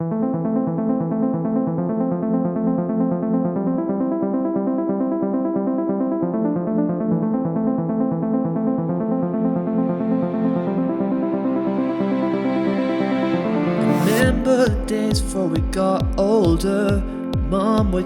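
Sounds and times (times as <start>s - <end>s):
synthesizer keyboard repeating pattern: 0.0s - 18.0s.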